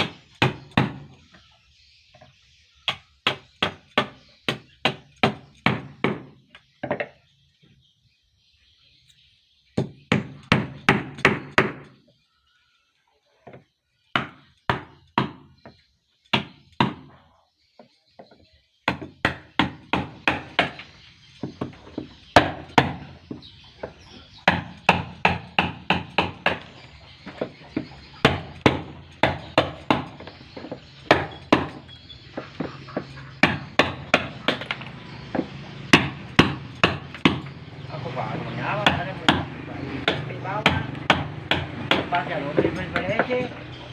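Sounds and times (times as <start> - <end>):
hand tool striking wood: 2.9 - 7.2, 18.9 - 20.8, 21.4 - 37.5, 38.7 - 43.6.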